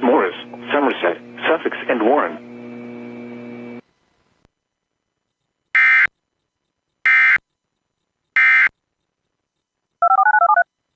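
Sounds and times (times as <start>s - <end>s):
buzzing digital data tones: 5.4s - 10.9s.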